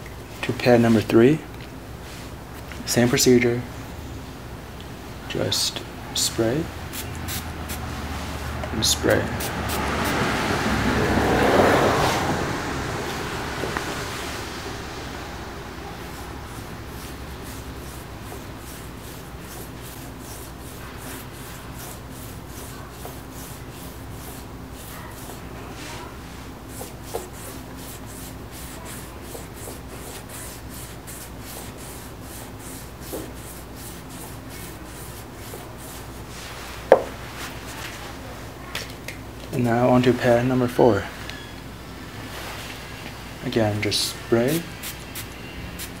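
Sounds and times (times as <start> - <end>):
sanding pad rubbing strokes: 15.9 - 26.0, 26.7 - 36.8.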